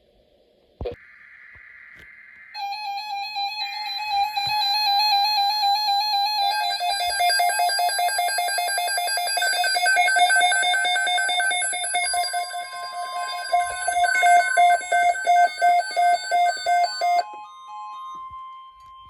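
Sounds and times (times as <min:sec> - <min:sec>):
warbling alarm tone: 0:02.5 - 0:19.0
pulsing two-tone beep: 0:02.6 - 0:17.3.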